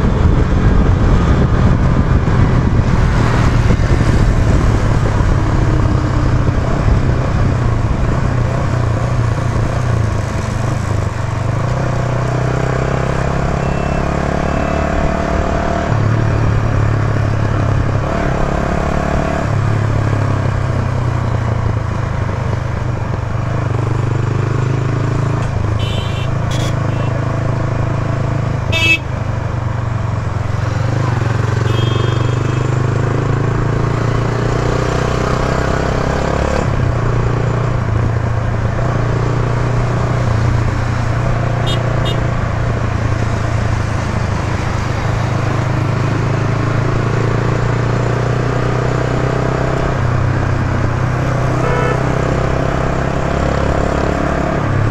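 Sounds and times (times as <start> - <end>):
short horn toots: 25.8 - 27.1, 28.7 - 29.1, 51.6 - 52.1.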